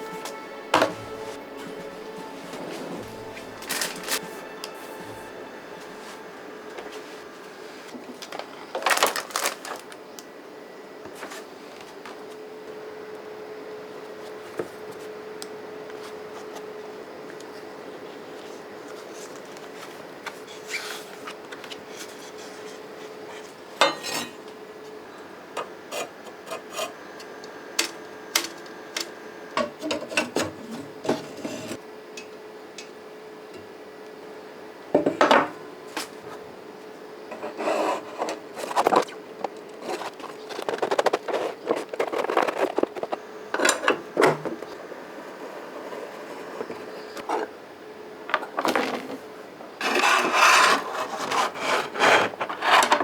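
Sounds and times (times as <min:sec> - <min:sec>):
rubbing and scraping: 0:39.8 - 0:43.2, 0:49.8 - 0:53.0.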